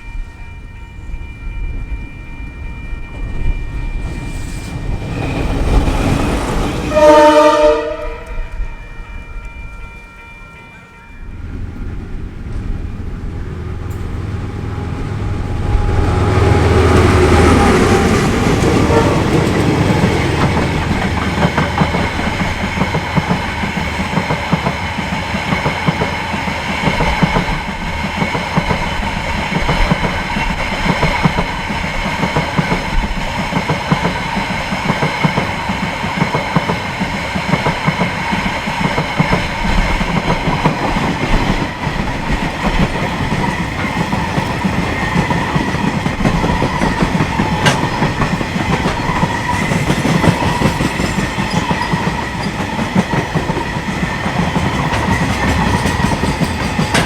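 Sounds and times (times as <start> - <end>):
diesel locomotive engine: 0.0 - 57.0
train wheels clattering on rails: 16.0 - 57.0.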